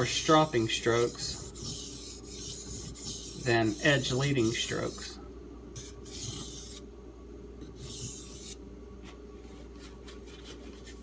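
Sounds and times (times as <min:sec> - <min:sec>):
knife scraping on sharpening stone: 0:00.0 - 0:05.1, 0:05.8 - 0:06.8, 0:07.8 - 0:08.6.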